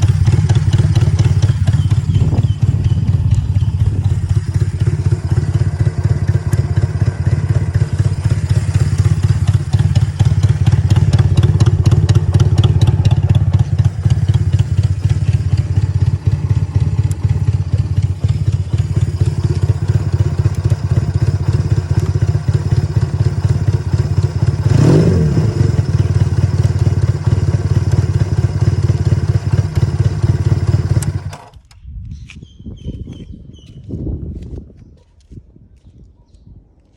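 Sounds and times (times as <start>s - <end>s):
motorcycle engine idling: 0.0s - 31.7s
faint bird chirps: 1.4s - 4.5s, 31.8s - 33.8s.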